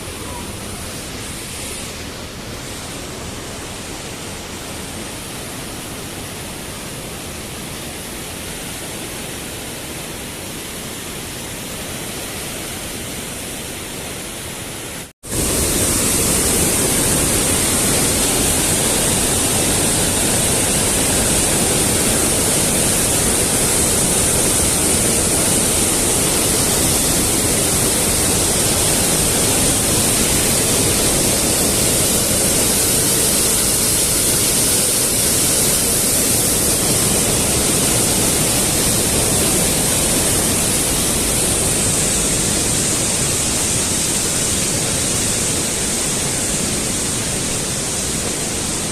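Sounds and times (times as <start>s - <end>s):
mountain stream rushing: 0.0s - 48.9s
waterfalls cascading: 0.0s - 48.9s.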